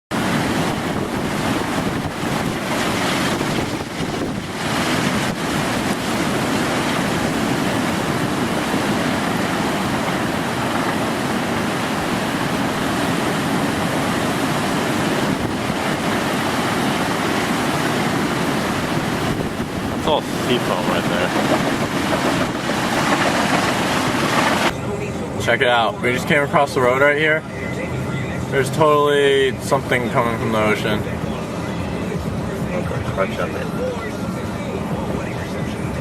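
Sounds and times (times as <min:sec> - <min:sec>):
strong wind rushing: 0:00.1 - 0:24.8
wind buffeting microphone: 0:00.1 - 0:25.4
surf breaking: 0:00.1 - 0:36.0.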